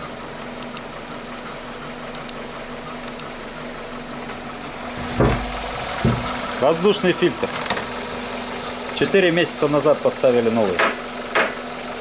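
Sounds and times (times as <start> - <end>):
engine idling with misfire: 0.0 - 12.0
loud thump: 5.0 - 6.5.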